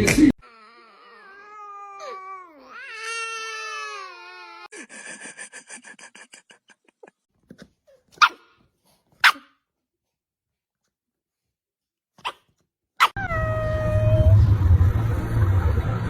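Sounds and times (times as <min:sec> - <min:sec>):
dog barking: 0:08.2 - 0:08.6, 0:09.2 - 0:09.6, 0:12.2 - 0:13.2.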